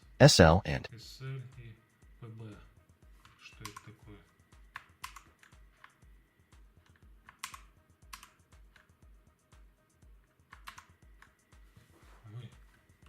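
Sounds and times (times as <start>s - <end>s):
mechanical keyboard key clicks: 4.8s - 5.3s, 7.3s - 8.9s.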